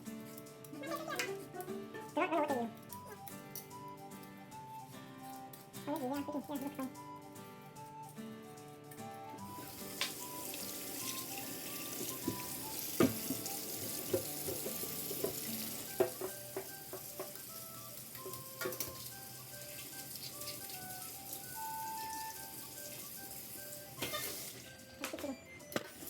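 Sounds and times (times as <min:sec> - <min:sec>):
soft background music: 0:00.0 - 0:26.0
tap water running into sink: 0:09.5 - 0:25.2.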